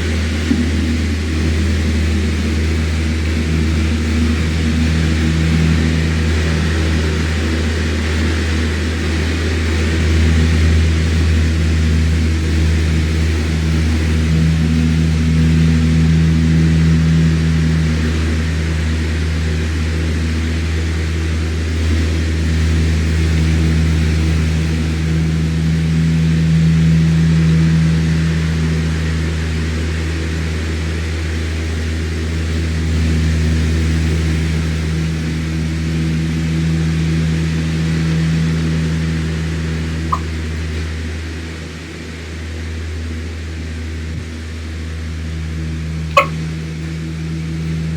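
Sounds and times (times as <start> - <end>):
electric fan running: 0.0 - 40.8
fan click: 46.1 - 46.4.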